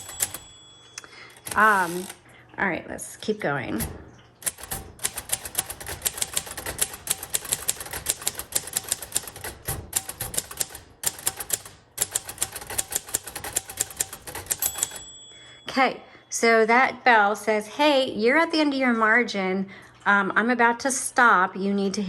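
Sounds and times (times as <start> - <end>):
manual typewriter typing: 0.0 - 2.2, 3.7 - 15.2.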